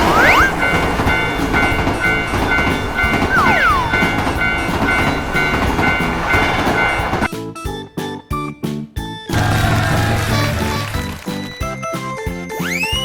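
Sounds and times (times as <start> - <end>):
falling whistle-like sweeps: 0.0 - 0.8, 3.3 - 4.3
level-crossing warning bell: 0.0 - 7.3
train rumbling: 0.0 - 7.3, 9.3 - 11.5.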